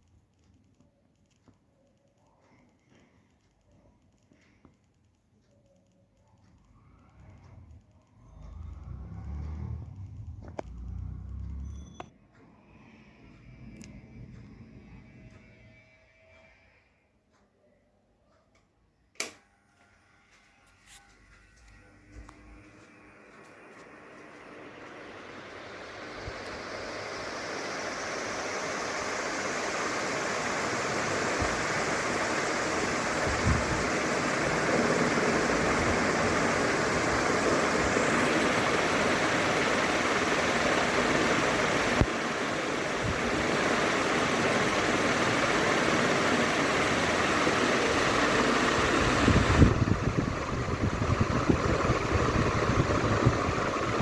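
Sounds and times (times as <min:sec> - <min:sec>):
ceiling fan rushing air: 0:06.7 - 0:16.6, 0:21.2 - 0:54.0.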